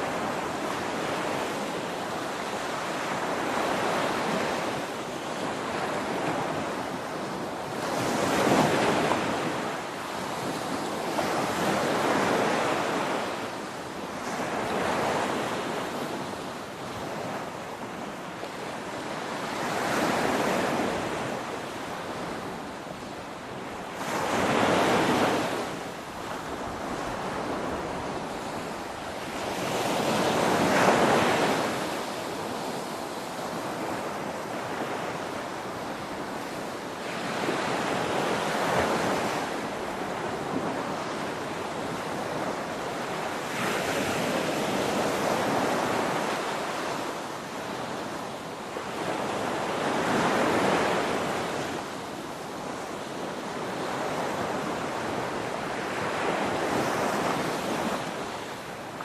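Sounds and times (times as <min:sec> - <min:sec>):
ocean waves crashing: 0:19.2 - 0:33.0.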